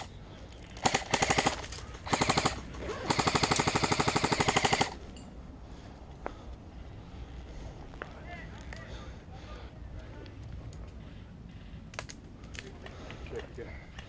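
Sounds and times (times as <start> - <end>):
airsoft gun full-auto bursts: 0.8 - 5.0.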